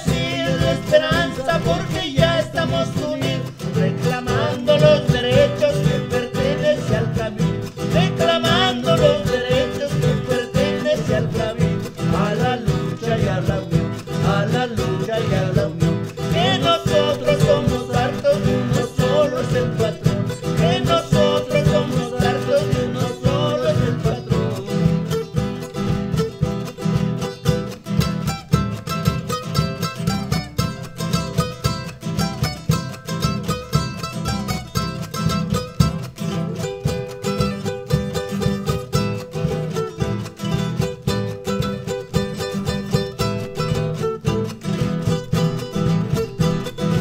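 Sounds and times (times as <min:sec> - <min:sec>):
strummed guitars: 0:00.0 - 0:47.0.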